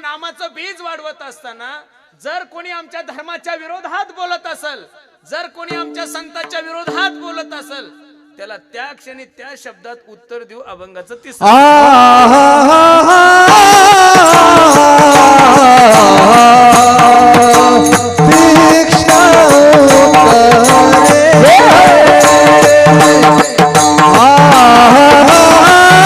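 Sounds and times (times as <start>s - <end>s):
drum beat: 5.7s - 8.1s, 13.2s - 26.0s
devotional melody: 5.7s - 8.8s, 11.5s - 26.0s.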